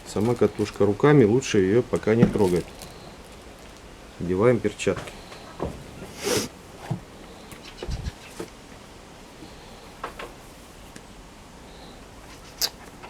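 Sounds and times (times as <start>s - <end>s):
gloves rustling: 0.0s - 7.2s.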